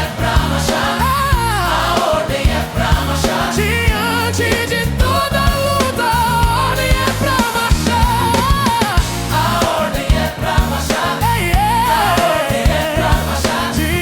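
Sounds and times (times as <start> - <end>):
bass: 0.0 - 14.0
drum beat: 0.0 - 14.0
person singing with vibrato: 0.0 - 14.0.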